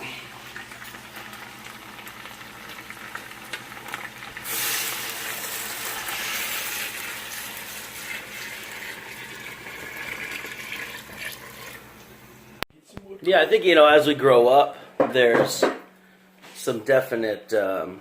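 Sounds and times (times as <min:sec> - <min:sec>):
chicken sizzling in a pot: 0:00.0 - 0:12.5
water poured with rushing hiss: 0:04.4 - 0:11.8.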